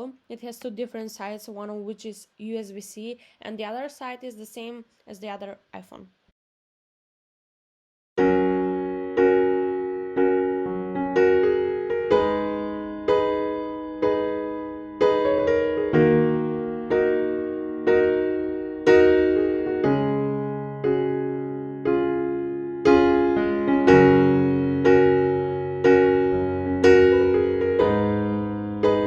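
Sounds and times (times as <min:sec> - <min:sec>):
soft electric piano chords: 0:08.2 - 0:29.0.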